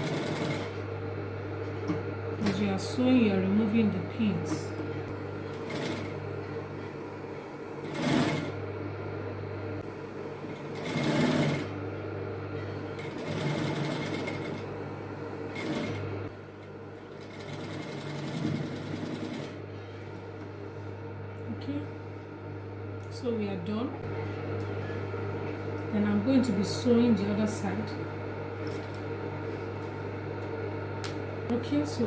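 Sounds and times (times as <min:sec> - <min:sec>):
sewing machine stitching: 0:00.0 - 0:00.8, 0:05.6 - 0:06.2, 0:07.8 - 0:08.6, 0:10.6 - 0:11.8, 0:13.0 - 0:14.6, 0:15.5 - 0:16.0, 0:17.2 - 0:19.6
steady motor hum: 0:00.0 - 0:32.0.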